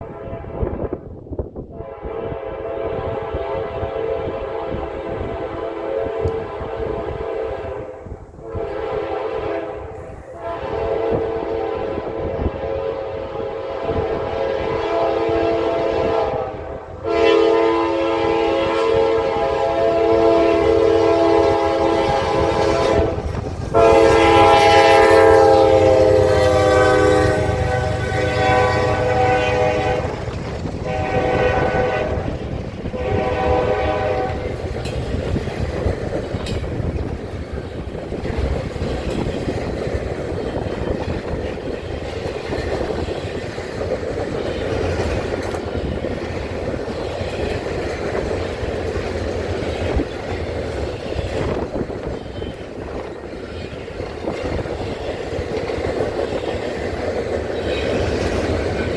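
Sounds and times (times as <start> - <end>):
locomotive air horn blasts: 0.0 - 0.9, 1.7 - 35.1
train cars rumbling on rails: 0.0 - 58.9.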